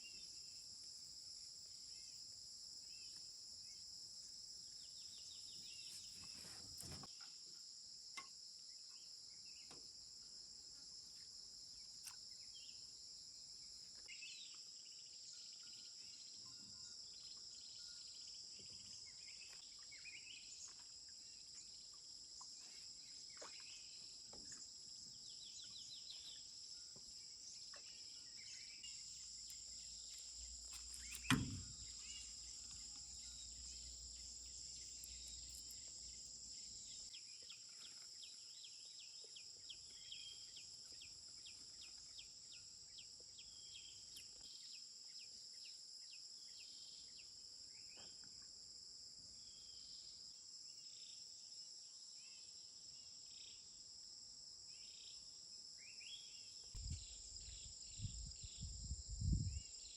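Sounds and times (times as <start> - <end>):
high-pitched insect chorus: 24.6 - 42.7
sharp thump: 31.0 - 32.2.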